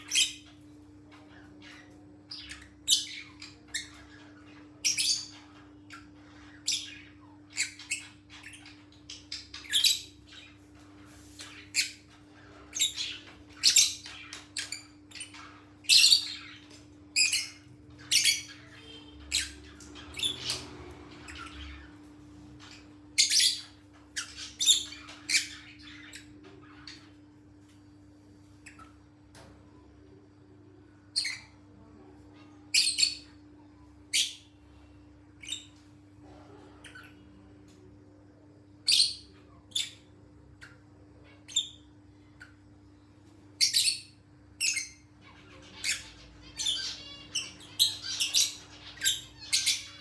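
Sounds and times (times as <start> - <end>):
bird squawking and chirping: 0.0 - 27.2, 43.6 - 50.0.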